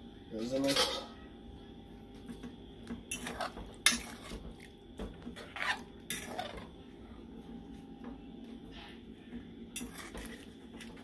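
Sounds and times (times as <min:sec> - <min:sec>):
metal utensil scraping in a pot: 0:00.6 - 0:01.2, 0:03.1 - 0:04.4, 0:05.4 - 0:06.7, 0:09.8 - 0:11.0.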